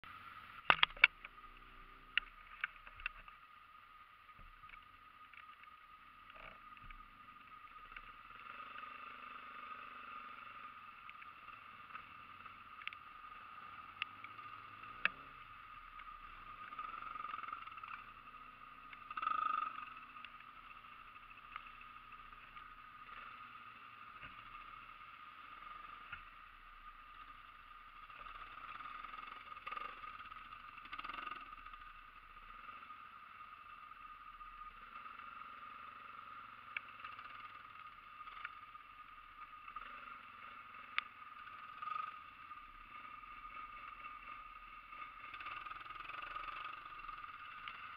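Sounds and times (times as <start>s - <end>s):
atv engines running: 0.0s - 47.9s
sharp clicks: 0.6s - 1.4s.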